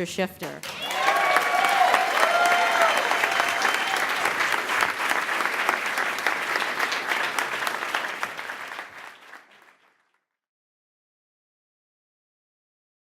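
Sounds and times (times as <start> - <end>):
audience applauding: 0.6 - 10.2.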